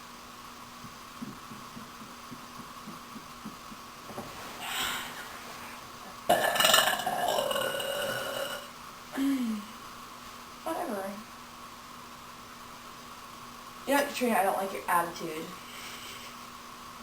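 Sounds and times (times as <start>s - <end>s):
woman belching: 6.3s - 8.7s.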